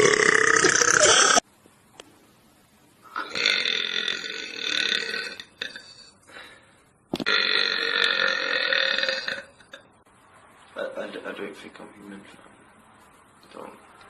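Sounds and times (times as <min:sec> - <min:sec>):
long belches: 0:00.0 - 0:01.4, 0:03.1 - 0:06.0, 0:07.2 - 0:09.8.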